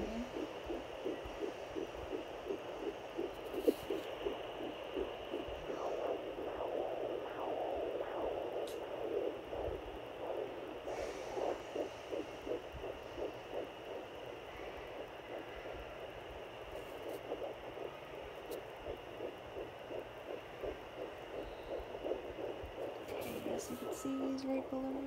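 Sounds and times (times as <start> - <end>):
fetal heartbeat whooshing pulse: 0.0 - 25.0.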